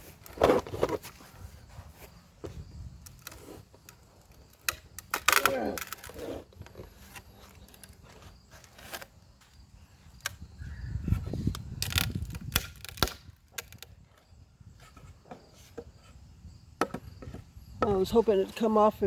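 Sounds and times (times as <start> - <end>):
wood cracking: 3.1 - 9.1, 11.5 - 14.2.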